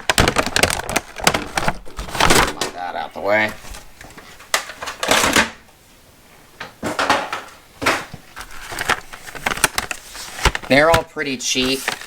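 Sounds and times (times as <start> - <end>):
plastic packaging crinkling: 0.0 - 5.6, 7.0 - 12.0
brushes rattling: 7.2 - 12.0.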